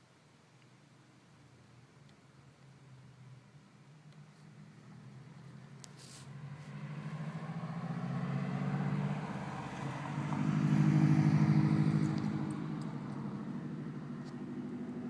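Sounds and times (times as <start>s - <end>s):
passing motor vehicle rumble: 4.2s - 15.0s.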